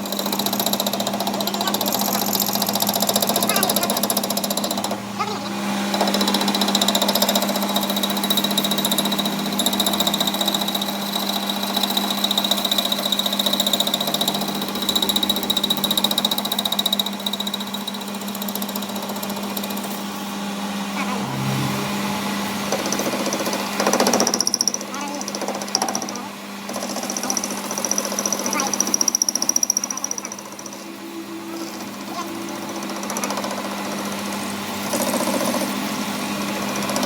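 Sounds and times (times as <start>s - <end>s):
workshop machine humming and rattling: 0.0s - 37.0s
high whine: 20.9s - 23.1s.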